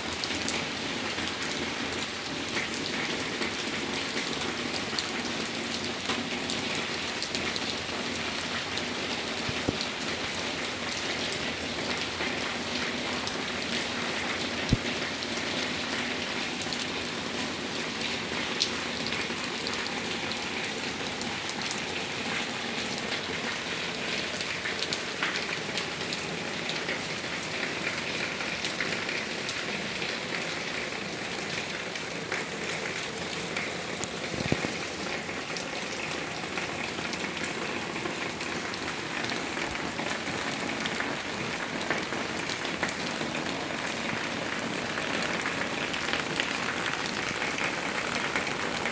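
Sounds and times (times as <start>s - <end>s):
rain falling: 0.0s - 48.9s.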